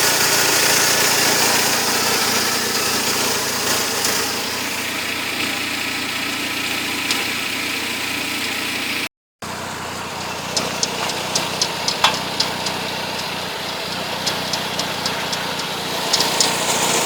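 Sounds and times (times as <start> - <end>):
car engine idling: 0.0 - 17.0
sharp irregular clicks: 10.2 - 17.0.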